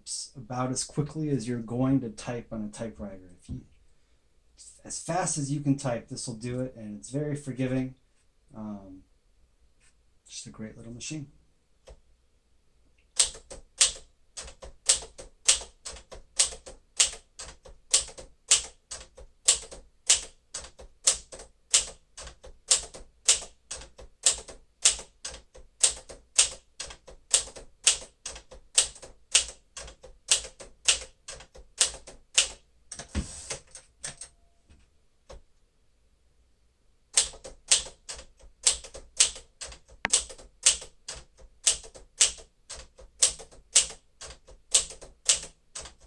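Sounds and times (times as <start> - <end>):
manual typewriter typing: 13.2 - 34.3, 37.1 - 46.0.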